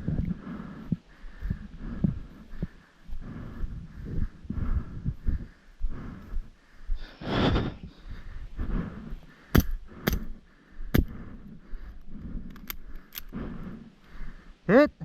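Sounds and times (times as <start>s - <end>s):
heavy breath: 0.0s - 14.7s.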